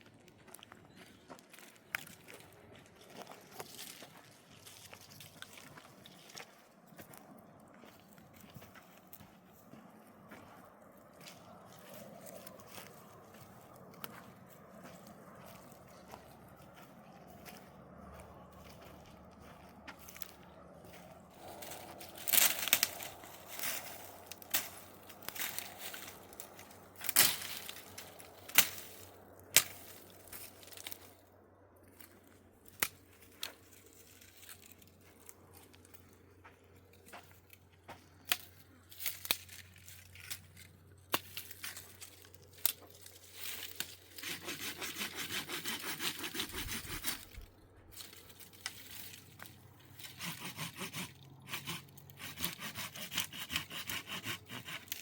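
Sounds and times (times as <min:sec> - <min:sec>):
handsaw cutting wood: 0:44.1 - 0:47.5, 0:49.9 - 0:55.0.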